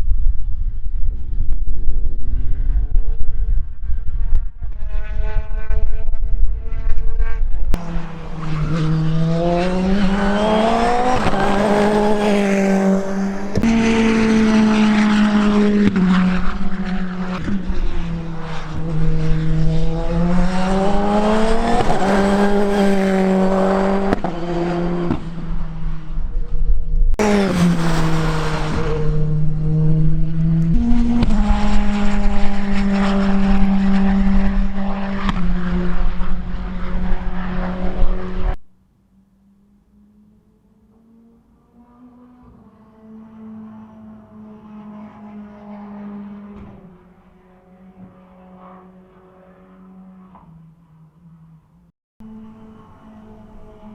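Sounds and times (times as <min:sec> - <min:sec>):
race car engine revving: 0:04.5 - 0:26.5, 0:27.1 - 0:38.6.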